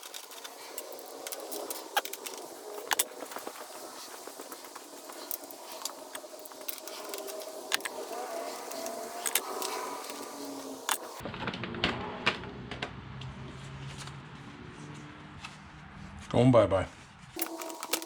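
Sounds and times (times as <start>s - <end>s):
hand tools clicking and clinking: 0.0s - 11.2s, 17.4s - 18.0s.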